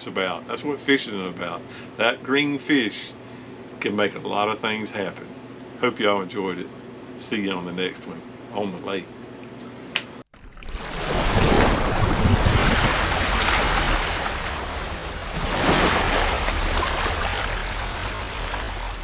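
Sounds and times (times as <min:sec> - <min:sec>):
water noise from boat: 0:10.3 - 0:19.0
wind on microphone: 0:11.2 - 0:17.6.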